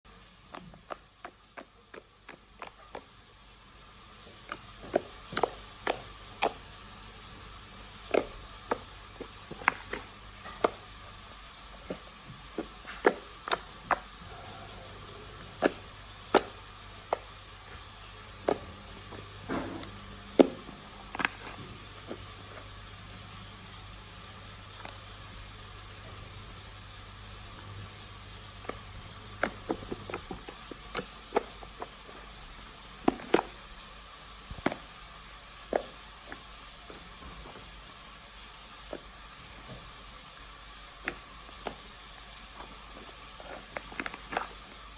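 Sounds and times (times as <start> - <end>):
steady hiss: 0.1 - 44.9
slime popping and clicking: 0.4 - 3.1, 4.4 - 6.6, 8.0 - 10.8, 12.5 - 14.1, 15.6 - 17.3, 33.0 - 33.6, 34.5 - 34.9.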